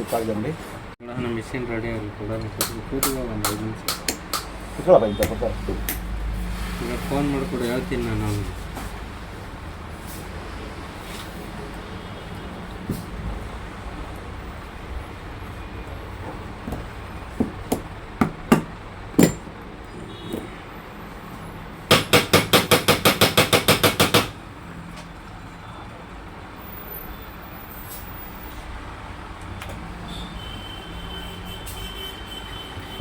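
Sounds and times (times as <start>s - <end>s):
hammer tapping: 2.4s - 4.6s, 16.7s - 19.5s, 21.9s - 24.4s.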